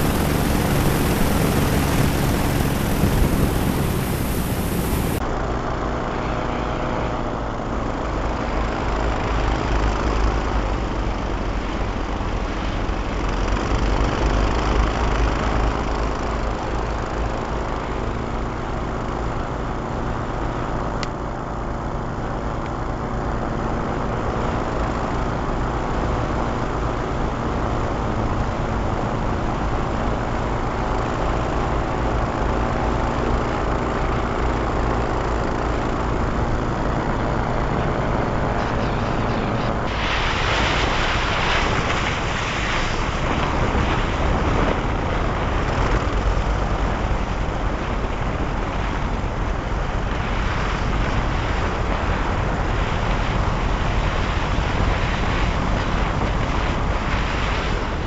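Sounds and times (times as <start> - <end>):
airboat engine and propeller drone: 0.0 - 58.0.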